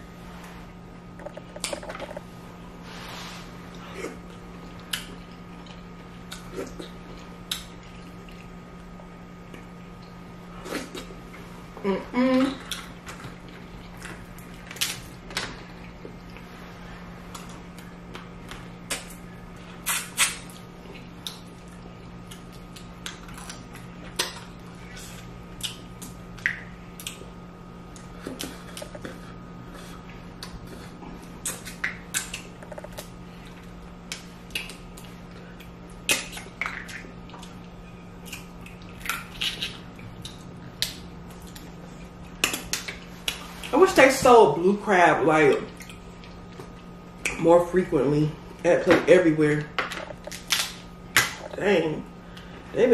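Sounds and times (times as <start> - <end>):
steady low hum: 0.0 - 52.9
crab shell cracking and crunching: 38.2 - 41.6, 50.1 - 51.5.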